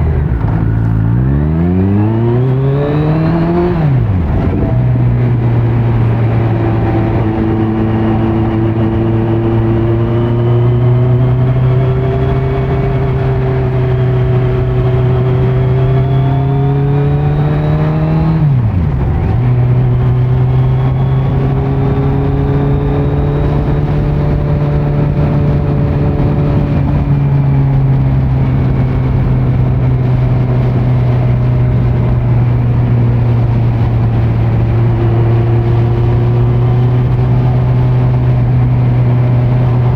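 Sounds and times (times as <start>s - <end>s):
motorcycle engine under throttle: 0.0s - 39.9s.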